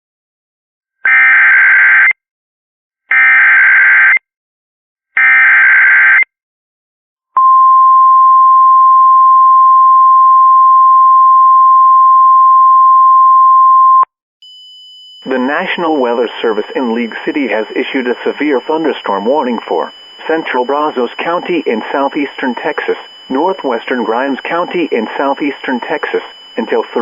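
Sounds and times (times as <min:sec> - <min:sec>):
steady single-pitch attention tone: 0:07.4 - 0:27.0
screeching digital data tones: 0:15.2 - 0:27.0.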